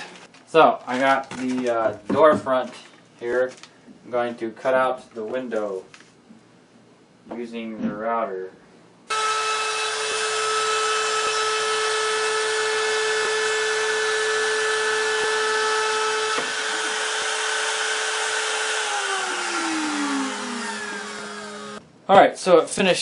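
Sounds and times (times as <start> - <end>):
router spindle whining: 9.1 - 21.8.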